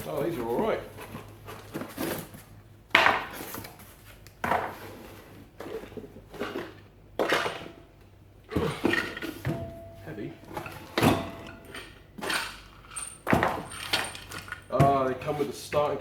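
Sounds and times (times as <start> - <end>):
heavy compressors knocking: 7.0 - 16.0.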